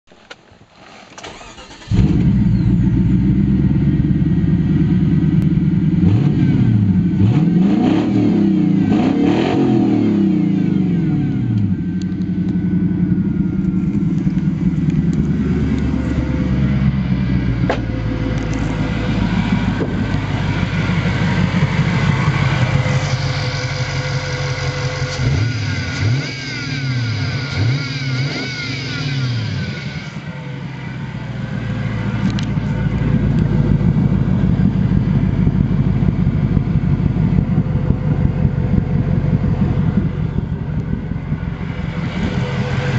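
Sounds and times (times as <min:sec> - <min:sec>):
engine cranking: 0:00.2 - 0:02.8
engine revving: 0:01.2 - 0:42.9
loud engine idling: 0:01.3 - 0:07.3, 0:08.3 - 0:42.9.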